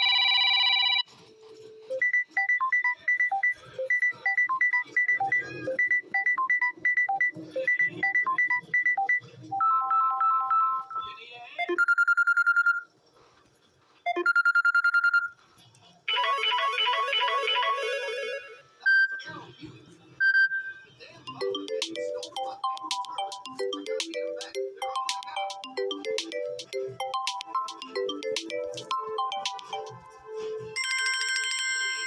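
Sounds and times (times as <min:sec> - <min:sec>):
phone ringtone melodies: 0:00.0 - 0:01.1, 0:03.7 - 0:11.0, 0:16.1 - 0:18.6, 0:21.3 - 0:30.1, 0:30.7 - 0:32.0.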